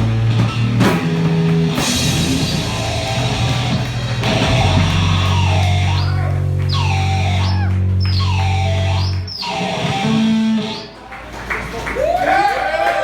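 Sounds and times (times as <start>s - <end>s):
electric guitar: 0.0s - 11.1s
live rock band playing: 0.0s - 11.1s
low bass note: 2.0s - 10.6s.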